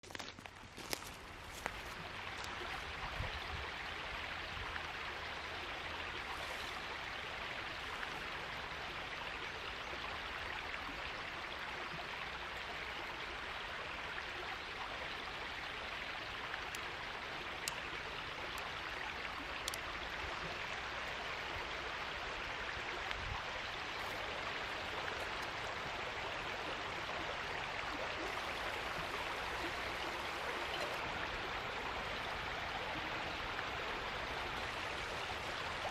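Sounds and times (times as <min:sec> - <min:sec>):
stream flowing: 0:00.0 - 0:35.9
faint clicks: 0:16.6 - 0:20.0.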